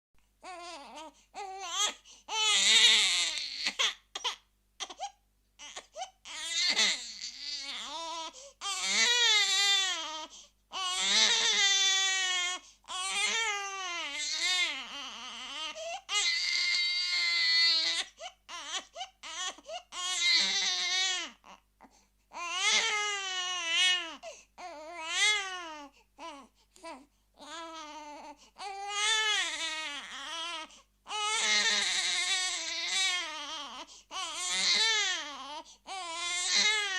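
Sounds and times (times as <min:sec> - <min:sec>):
infant screaming and crying: 0:05.6 - 0:21.6, 0:22.3 - 0:36.9.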